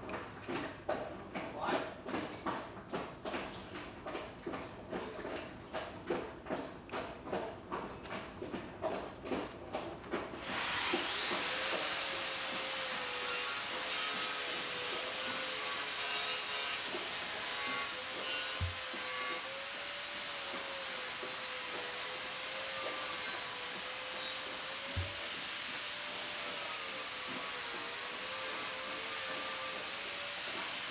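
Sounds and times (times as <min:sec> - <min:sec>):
power tool motor whining: 0:10.4 - 0:30.9.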